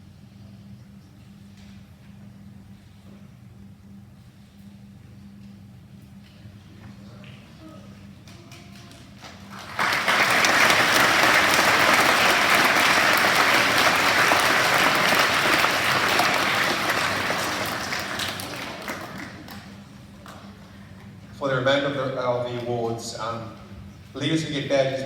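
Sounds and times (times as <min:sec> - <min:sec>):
audience applauding: 0:08.9 - 0:20.4.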